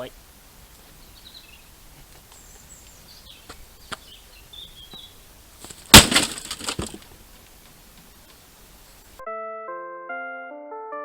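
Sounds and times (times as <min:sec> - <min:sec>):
rattling debris: 0:05.6 - 0:07.2
weight crashing onto microwave: 0:05.8 - 0:07.0.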